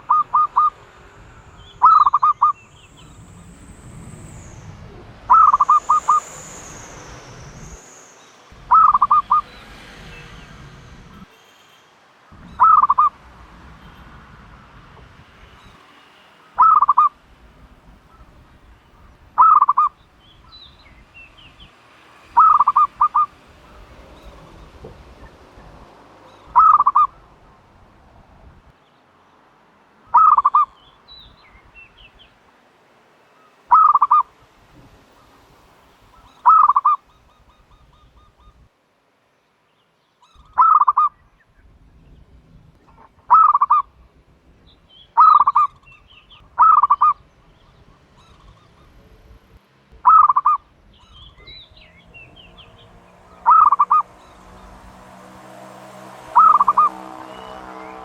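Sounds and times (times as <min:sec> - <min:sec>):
dove cooing: 0:00.0 - 0:00.8, 0:01.8 - 0:02.6, 0:04.8 - 0:06.2, 0:08.7 - 0:09.4, 0:12.4 - 0:13.1, 0:16.6 - 0:17.1, 0:19.4 - 0:19.9, 0:22.4 - 0:23.3, 0:26.5 - 0:27.3, 0:30.2 - 0:30.7, 0:36.5 - 0:37.0, 0:53.4 - 0:54.1, 0:56.4 - 0:57.2
small birds chirping: 0:00.0 - 0:14.2, 0:15.0 - 0:17.2, 0:17.9 - 0:27.8, 0:30.1 - 0:32.4, 0:33.3 - 0:34.3, 0:35.1 - 0:38.7, 0:39.3 - 0:58.0.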